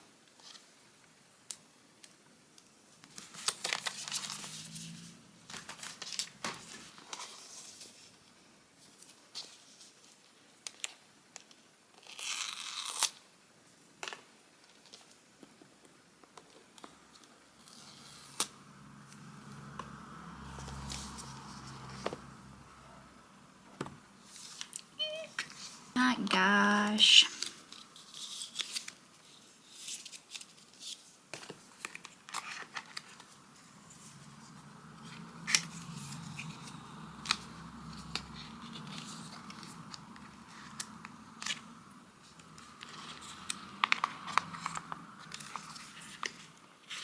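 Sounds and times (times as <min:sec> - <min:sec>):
packaging clicks and rustles: 0:03.0 - 0:08.0, 0:27.4 - 0:33.4, 0:42.3 - 0:47.0.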